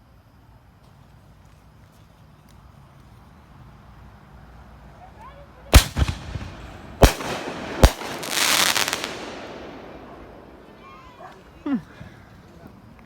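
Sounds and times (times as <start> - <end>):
crackling firework burst: 5.7 - 11.6
fireworks bangs: 5.7 - 11.6.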